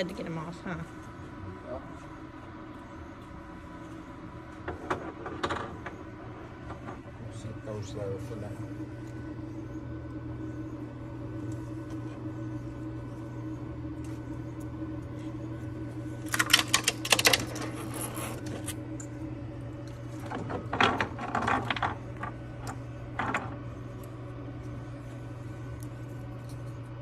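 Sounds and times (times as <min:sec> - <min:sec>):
printers humming: 0:00.0 - 0:27.0
plastic parts clicking and rattling: 0:16.3 - 0:17.8.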